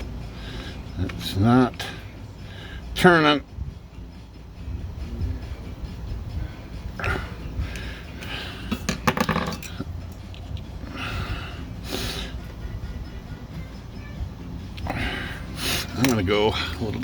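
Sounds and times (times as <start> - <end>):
metal tools clinking on metal: 8.8 - 10.4, 15.8 - 17.0.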